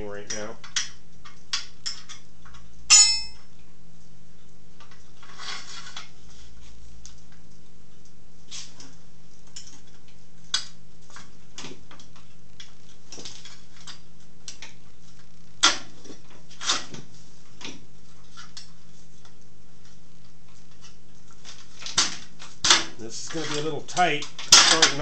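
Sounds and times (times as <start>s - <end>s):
sharp metal clank: 2.9s - 3.4s.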